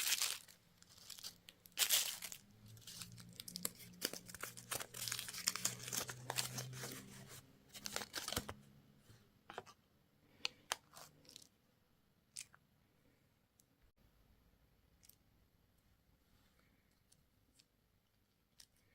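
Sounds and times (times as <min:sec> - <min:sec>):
candy wrapper tearing and crinkling: 0:00.0 - 0:07.1, 0:07.7 - 0:08.5.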